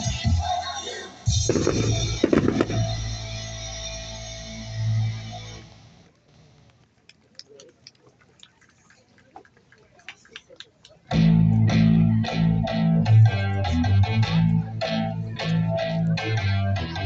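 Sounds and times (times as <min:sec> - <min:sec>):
band song with electric guitar: 0:11.1 - 0:17.0.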